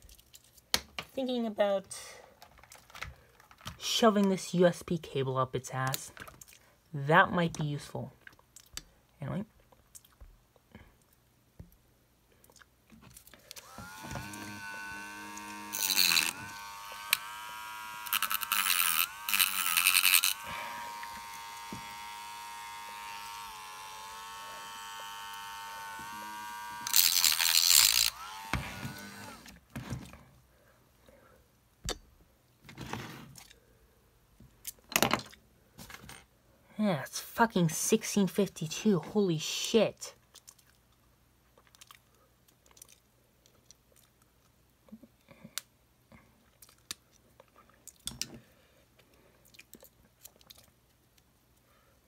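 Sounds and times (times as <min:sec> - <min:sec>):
electric rotary tool whining: 0:13.6 - 0:29.6.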